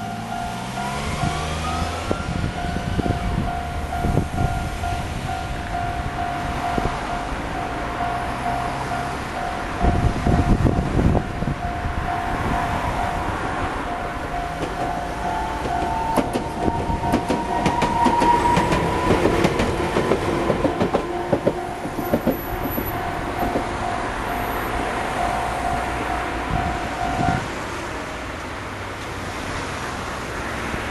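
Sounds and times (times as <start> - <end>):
crossing warning bell ringing: 0.0 - 28.2
train motor whine: 9.3 - 27.4
train wheels clattering: 14.4 - 24.7.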